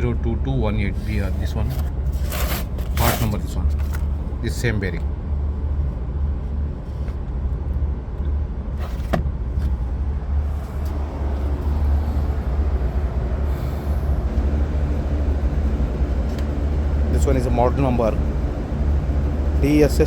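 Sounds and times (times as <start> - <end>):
low rumble: 3.6 - 20.0.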